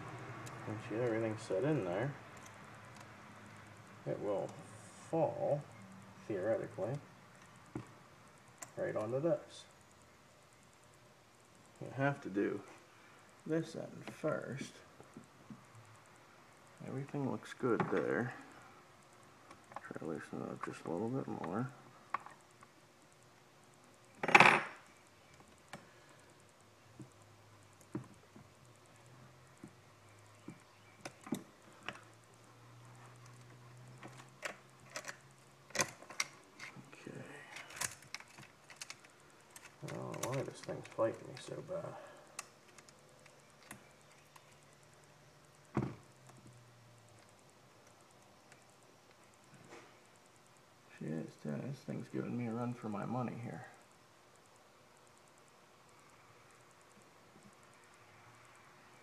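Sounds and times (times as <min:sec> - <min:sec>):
faint clicks: 0:33.1 - 0:50.6.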